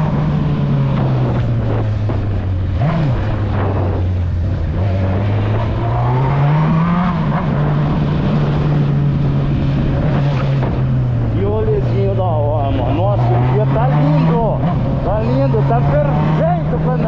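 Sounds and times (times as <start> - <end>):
wind noise: 0.0 - 5.9
motorcycle engine accelerating: 0.0 - 17.0.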